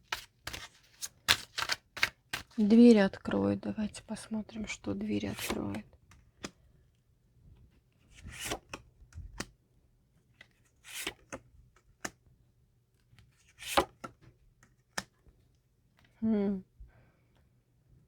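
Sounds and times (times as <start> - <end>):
cards swishing: 0.1 - 2.6.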